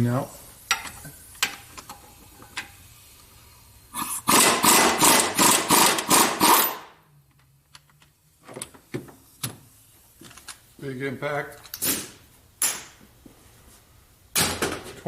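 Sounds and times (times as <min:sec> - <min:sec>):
impact wrench hammering: 0:04.2 - 0:06.9.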